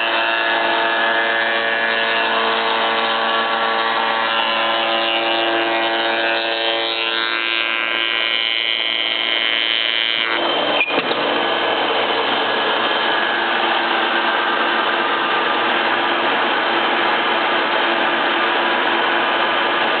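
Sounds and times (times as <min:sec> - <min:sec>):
rotary shaper whining: 0:10.4 - 0:20.0.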